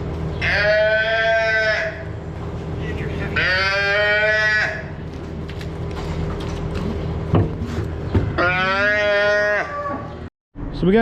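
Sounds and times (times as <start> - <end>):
steady low hum: 0.0 - 11.0
calf bawling: 0.4 - 2.1, 3.3 - 5.0, 8.3 - 10.3.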